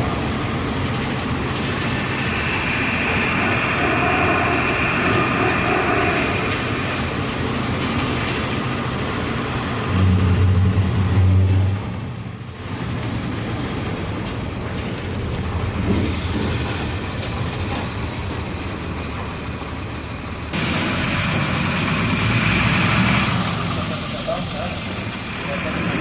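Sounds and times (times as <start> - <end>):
steady rushing noise: 0.0 - 12.5
bus diesel engine running: 0.0 - 26.0.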